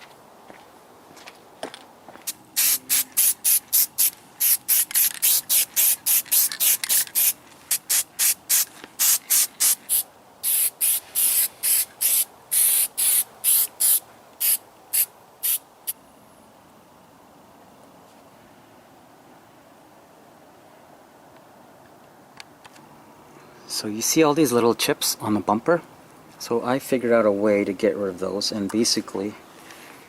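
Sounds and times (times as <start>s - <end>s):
spray bursts: 2.3s - 16.0s.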